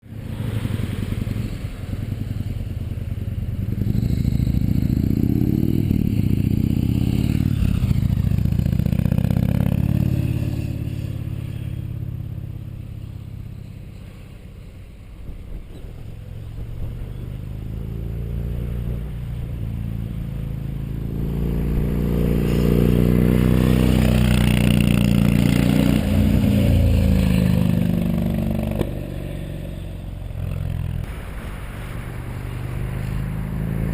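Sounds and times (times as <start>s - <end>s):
motorcycle engine revving: 0.0s - 13.5s, 15.8s - 31.5s, 32.2s - 33.9s.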